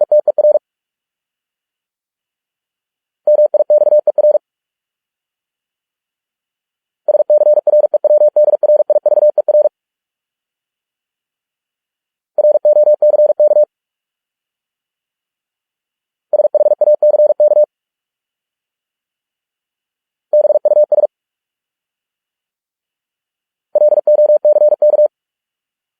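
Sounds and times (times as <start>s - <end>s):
morse code beeps: 12.4s - 13.7s, 16.4s - 17.7s, 20.4s - 21.1s, 23.8s - 25.1s.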